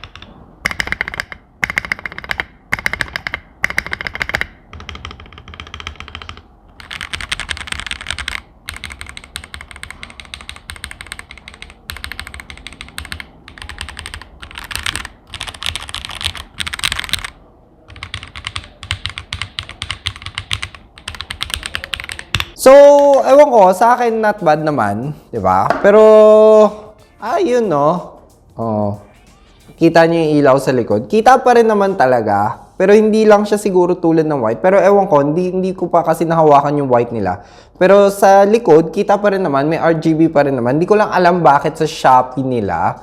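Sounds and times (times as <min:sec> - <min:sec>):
fast typing on mechanical keyboard: 0:00.0 - 0:22.6.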